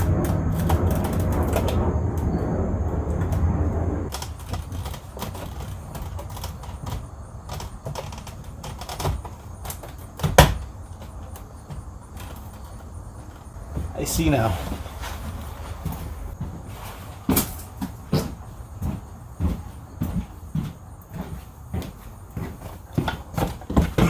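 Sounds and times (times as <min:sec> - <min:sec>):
low rumble: 0:00.0 - 0:04.1.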